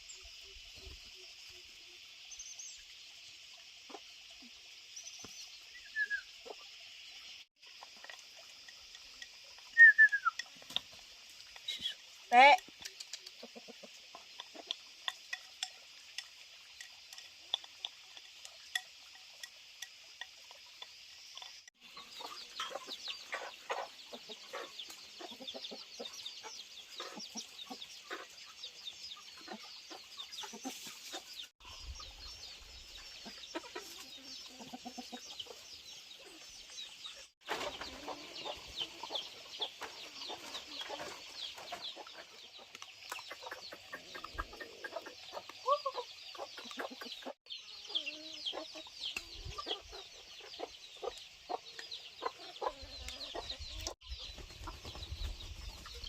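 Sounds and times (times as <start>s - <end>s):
chickens clucking: 11.6s - 15.6s, 21.4s - 32.1s, 32.8s - 56.0s.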